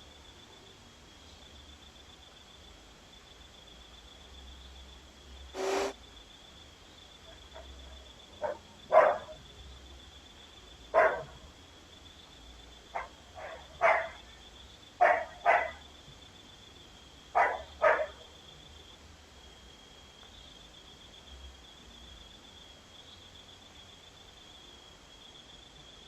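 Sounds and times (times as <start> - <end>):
dog barking: 8.4 - 9.4, 10.9 - 11.4, 12.9 - 14.3, 15.0 - 15.8, 17.4 - 18.2.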